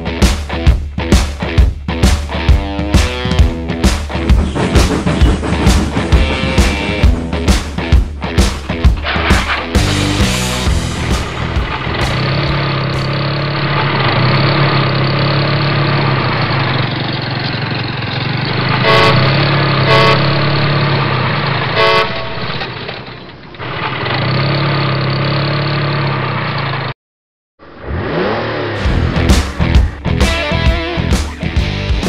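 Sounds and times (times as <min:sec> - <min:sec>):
engine rumble: 0:01.7 - 0:26.9, 0:27.6 - 0:32.0
horn blasts: 0:18.7 - 0:20.8, 0:21.7 - 0:22.8.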